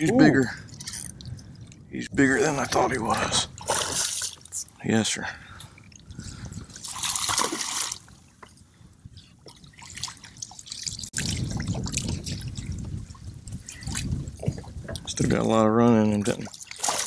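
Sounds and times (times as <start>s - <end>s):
fish thrashing and splashing: 3.6s - 4.5s, 6.8s - 8.2s, 16.5s - 17.0s.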